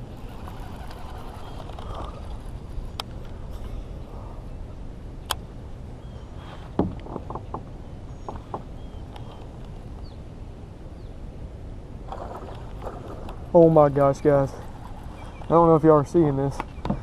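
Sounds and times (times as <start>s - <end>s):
knocks against the hull: 6.8s - 7.7s.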